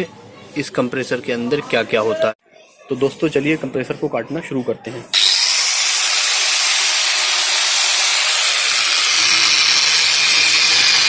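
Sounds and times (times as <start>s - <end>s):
angle grinder cutting steel: 5.1s - 11.0s.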